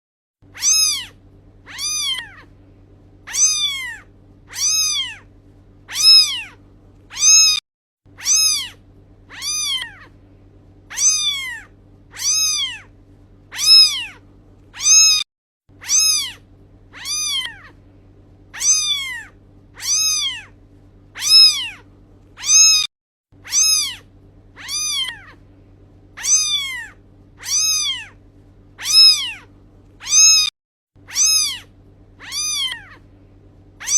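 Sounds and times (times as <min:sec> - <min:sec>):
low hum: 0:00.4 - 0:07.2, 0:08.1 - 0:14.9, 0:15.7 - 0:22.4, 0:23.4 - 0:30.1, 0:31.0 - 0:33.9
cat meowing: 0:00.5 - 0:02.5, 0:03.2 - 0:05.3, 0:05.9 - 0:07.6, 0:08.2 - 0:10.2, 0:10.9 - 0:12.9, 0:13.5 - 0:14.2, 0:14.8 - 0:15.2, 0:15.8 - 0:17.8, 0:18.5 - 0:20.6, 0:21.2 - 0:21.8, 0:22.4 - 0:25.4, 0:26.2 - 0:28.2, 0:28.8 - 0:30.5, 0:31.1 - 0:33.0.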